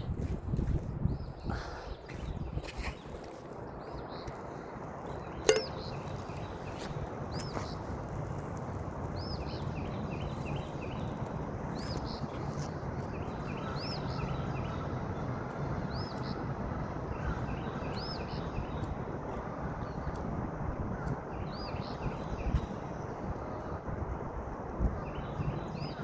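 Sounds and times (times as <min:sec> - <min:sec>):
outdoor noise rush: 0:00.0 - 0:26.0.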